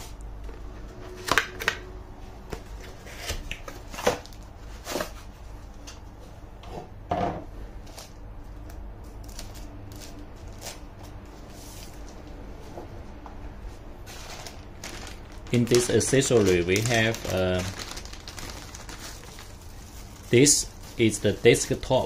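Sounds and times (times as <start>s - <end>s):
packaging rustling: 14.0s - 22.0s.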